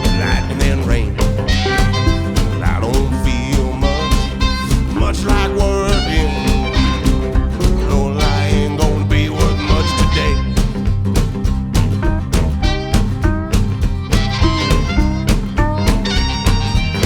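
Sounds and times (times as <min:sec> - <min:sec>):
blues band music: 0:00.0 - 0:17.0.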